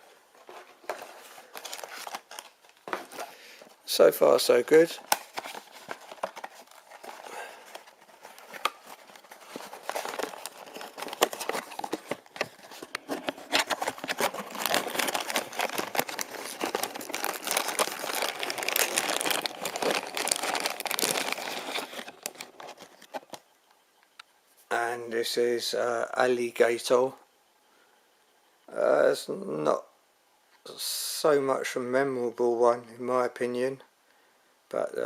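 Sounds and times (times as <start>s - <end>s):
crinkly packaging torn open: 1.5s - 3.3s, 4.7s - 23.4s.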